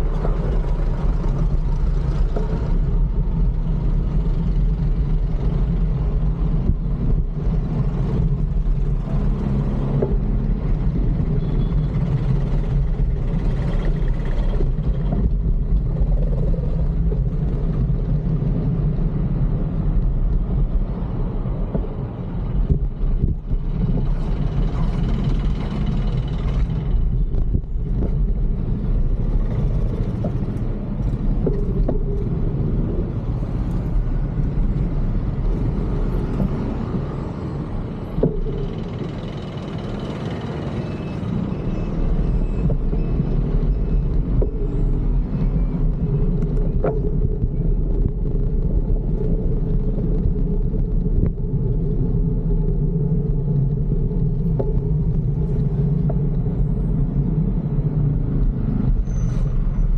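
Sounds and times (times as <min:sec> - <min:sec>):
city traffic rumble: 0:00.0 - 0:59.9.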